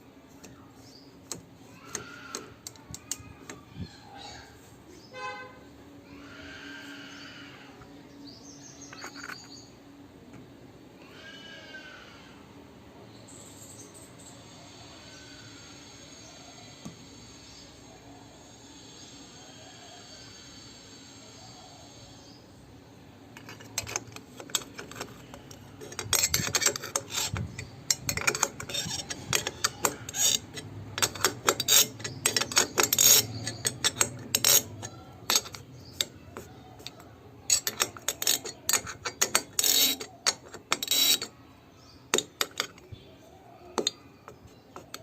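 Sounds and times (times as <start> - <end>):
metallic tool clicks: 23.4 - 41.3, 42.1 - 42.9.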